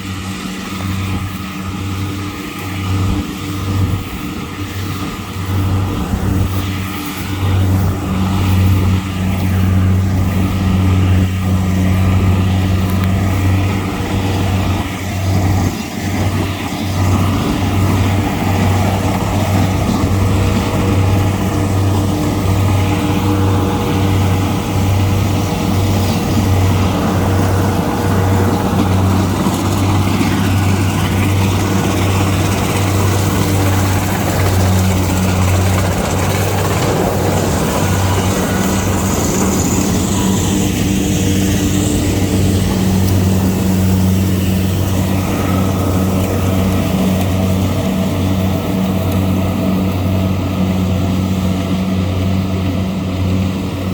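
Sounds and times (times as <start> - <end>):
combine harvester engine drone: 0.0 - 53.9
working machinery noise: 0.0 - 53.9.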